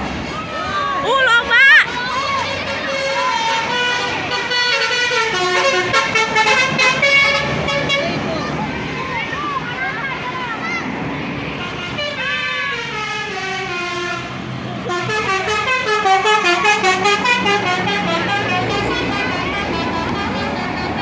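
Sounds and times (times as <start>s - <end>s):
bus engine humming: 0.0s - 21.0s
musical air horn playing a tune: 2.4s - 8.2s, 11.9s - 20.7s.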